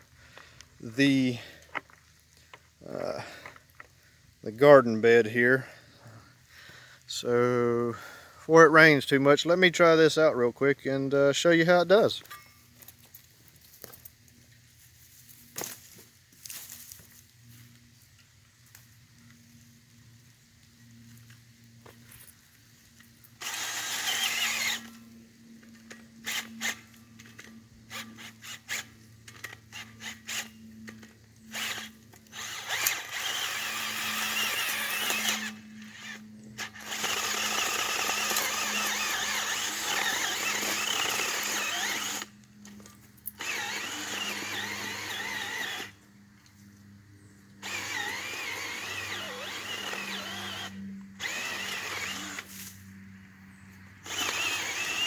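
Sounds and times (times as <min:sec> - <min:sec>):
cordless drill boring into soil: 0:23.0 - 0:46.0, 0:47.5 - 0:52.8, 0:54.0 - 0:55.0.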